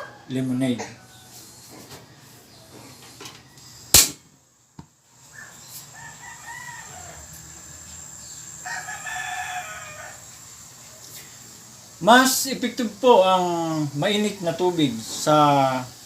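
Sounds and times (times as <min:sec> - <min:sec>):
rooster crowing: 0:00.0 - 0:02.4, 0:05.3 - 0:10.4.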